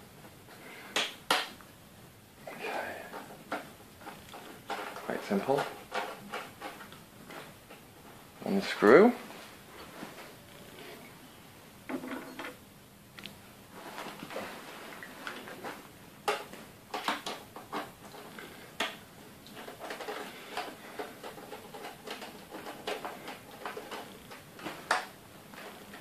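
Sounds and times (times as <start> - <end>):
metal and plastic scraping: 4.0 - 7.5, 13.8 - 26.0.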